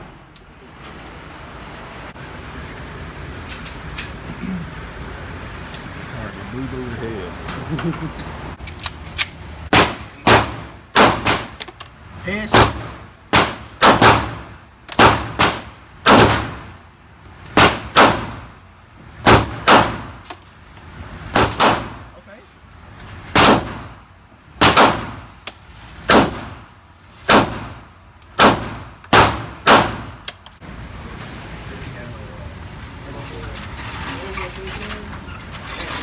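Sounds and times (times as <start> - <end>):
gunshots: 9.7 - 11.6, 12.5 - 16.8, 17.6 - 18.5, 19.2 - 20.2, 21.3 - 22.1, 23.3 - 24.0, 24.6 - 25.3, 26.1 - 26.6, 27.3 - 27.8, 28.4 - 30.2.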